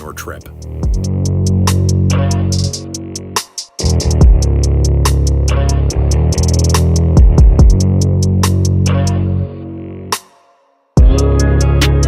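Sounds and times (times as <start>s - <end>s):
background music with guitar: 11.0s - 12.0s.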